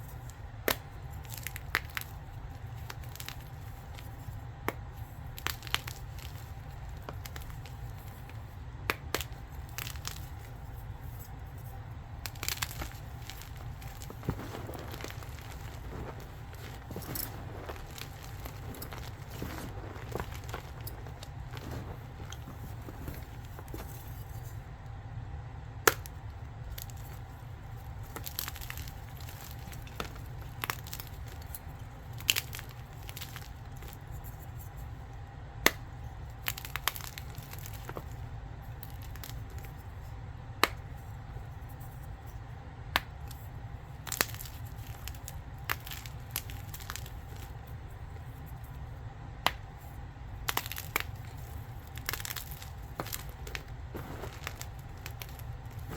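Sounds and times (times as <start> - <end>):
chalk crumbling crunches: 0.0 - 24.6, 25.9 - 35.0, 35.6 - 40.8, 43.0 - 48.8, 49.4 - 55.9
sharp cracks of chalk snapping: 25.9 - 26.2, 44.0 - 47.5, 50.4 - 55.9.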